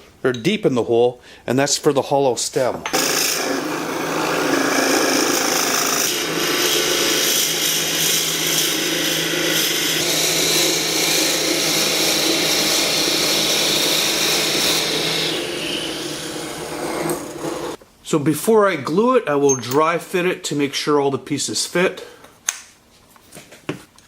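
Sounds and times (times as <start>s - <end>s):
power drill boring into wood: 2.9s - 17.8s.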